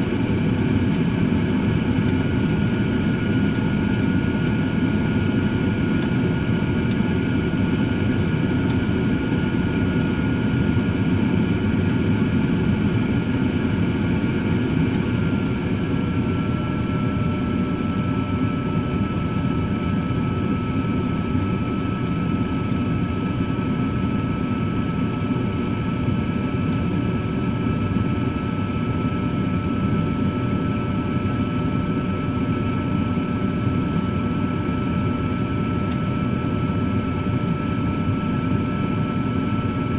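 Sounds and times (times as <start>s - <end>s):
air fryer fan whirring: 0.0s - 31.5s.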